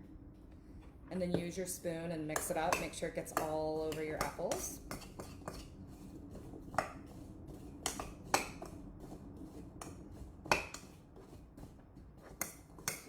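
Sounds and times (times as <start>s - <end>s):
soft stirring: 0.3s - 13.0s.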